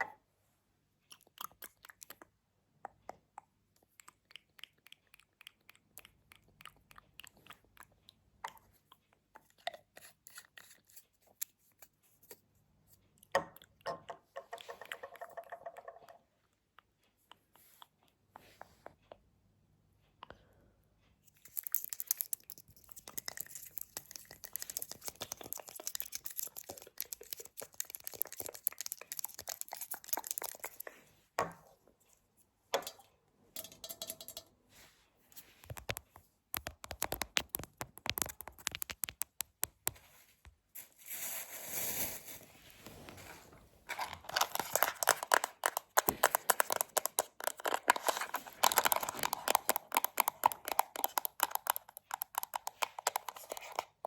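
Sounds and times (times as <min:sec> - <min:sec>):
crinkly rustling: 0:39.9 - 0:51.1.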